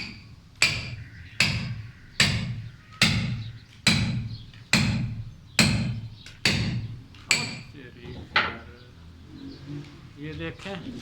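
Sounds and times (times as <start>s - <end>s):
hammer striking chisel into concrete: 0.0s - 7.7s.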